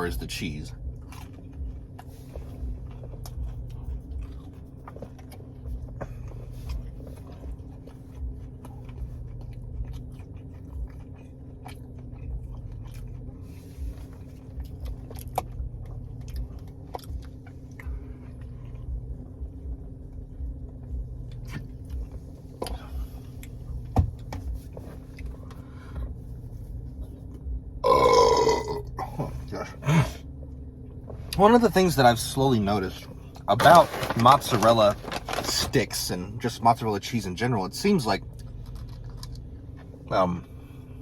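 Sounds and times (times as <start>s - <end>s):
steady low hum: 0.0s - 41.0s
person chewing food: 0.8s - 26.4s, 38.3s - 40.0s.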